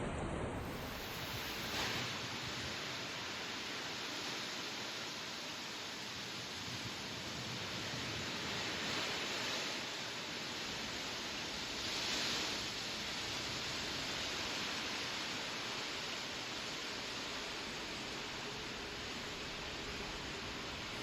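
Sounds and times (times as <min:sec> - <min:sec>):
wind: 0:00.0 - 0:21.0
skis sliding over snow: 0:00.6 - 0:04.6.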